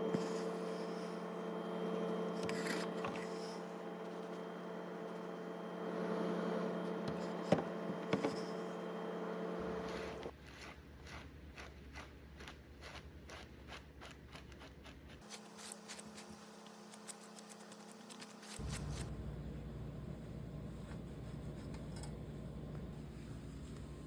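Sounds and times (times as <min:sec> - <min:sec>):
steady hum: 0:00.0 - 0:10.4, 0:15.2 - 0:24.0.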